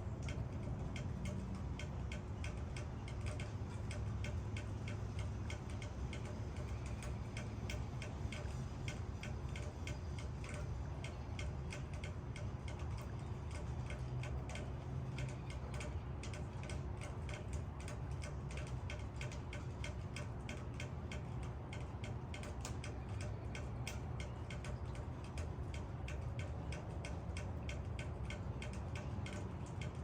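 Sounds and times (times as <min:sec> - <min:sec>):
raindrops tapping on leaves: 0:00.0 - 0:30.0.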